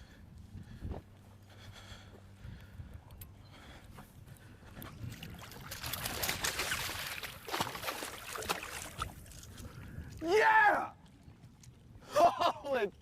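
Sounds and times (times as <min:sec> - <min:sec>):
fish splashing in water: 0:05.2 - 0:09.6.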